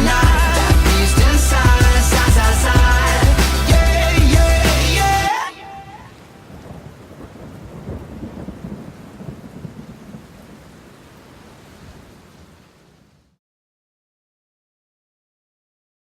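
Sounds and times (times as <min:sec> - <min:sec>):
steady rain: 0:00.0 - 0:13.4
low rumbling thunder: 0:06.3 - 0:10.9.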